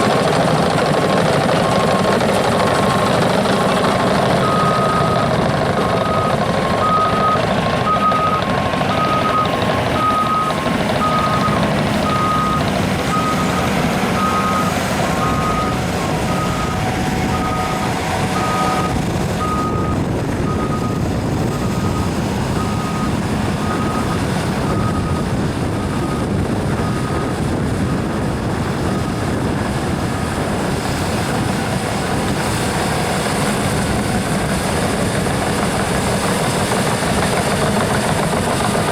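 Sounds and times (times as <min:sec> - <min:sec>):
bulldozer diesel engine running: 0:00.0 - 0:38.9
reversing alarm beeps: 0:04.3 - 0:28.0.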